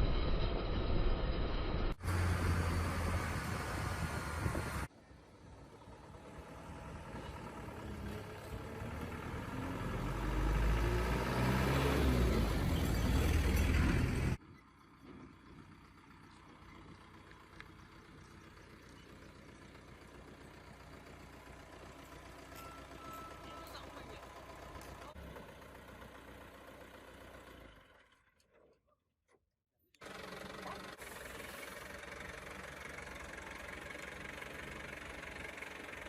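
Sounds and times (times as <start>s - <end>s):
vehicle engine revving: 1.9s - 4.9s, 5.7s - 14.4s
quiet steady engine hum: 2.0s - 11.0s, 12.5s - 28.3s, 30.0s - 36.0s.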